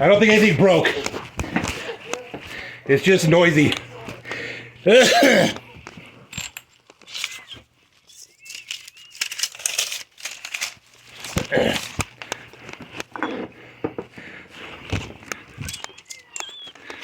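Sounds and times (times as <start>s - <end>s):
rustling and crinkling: 5.6s - 17.0s.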